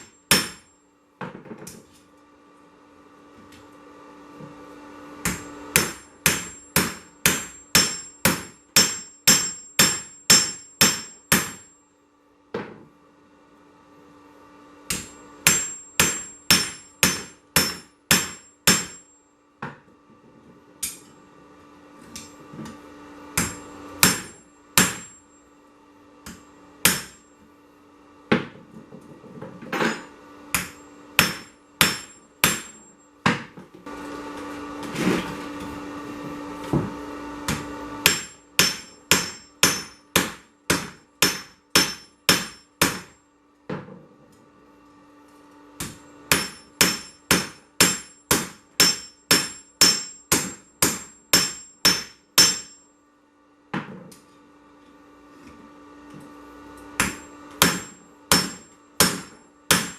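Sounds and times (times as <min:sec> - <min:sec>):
hammer striking steel on anvil: 0:00.0 - 0:00.8, 0:05.2 - 0:11.9, 0:14.9 - 0:19.2, 0:20.8 - 0:21.2, 0:23.4 - 0:25.4, 0:26.3 - 0:27.4, 0:29.8 - 0:33.5, 0:37.4 - 0:43.2, 0:45.8 - 0:52.9, 0:57.0 - 0:59.9.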